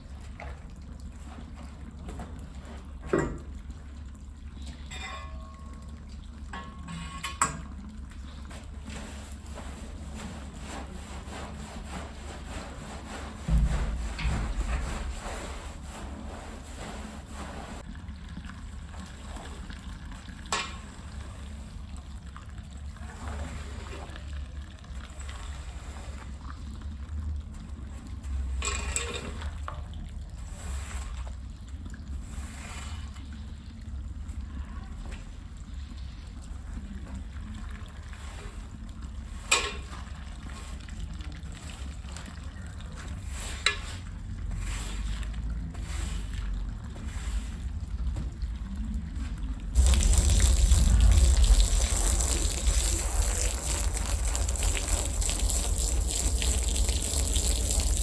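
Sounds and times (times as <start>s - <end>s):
steady low hum: 12.4s - 17.9s, 47.8s - 58.0s
low steady rumble: 13.3s - 23.2s, 44.1s - 58.0s
water running and splashing: 36.6s - 58.0s
rush of water spray: 49.7s - 58.0s.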